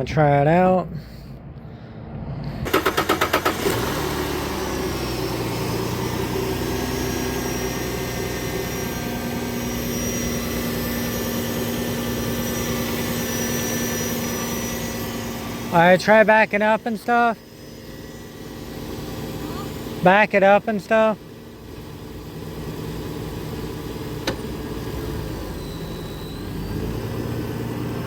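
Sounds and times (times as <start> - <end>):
car engine idling: 1.0 - 28.0
car engine starter cranking: 2.6 - 6.4, 23.4 - 26.4.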